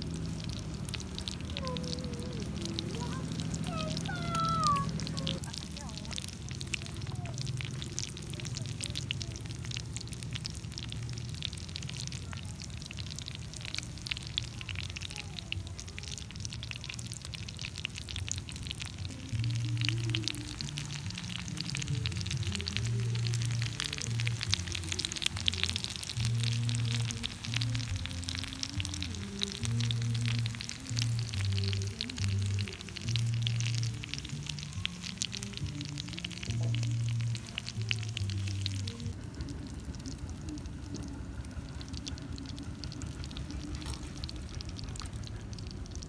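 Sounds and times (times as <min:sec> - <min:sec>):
food sizzling and crackling: 0:00.0 - 0:46.0
background music: 0:17.7 - 0:44.8.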